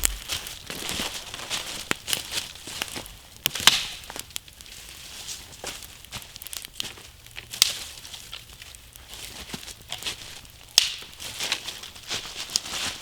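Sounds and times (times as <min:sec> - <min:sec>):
loud fire pops: 0:00.0 - 0:00.9
campfire crackling: 0:00.0 - 0:12.6.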